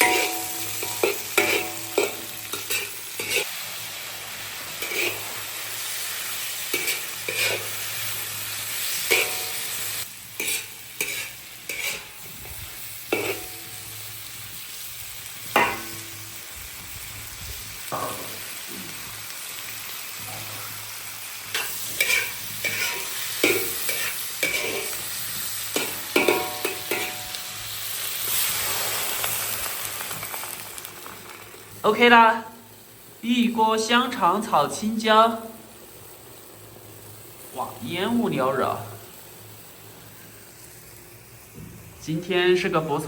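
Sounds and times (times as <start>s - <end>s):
spatula scraping a pan: 0.0s - 3.6s, 4.8s - 5.5s, 6.6s - 9.7s, 10.3s - 12.3s, 13.1s - 13.6s, 21.5s - 27.3s
food sizzling in a wok: 0.0s - 43.0s.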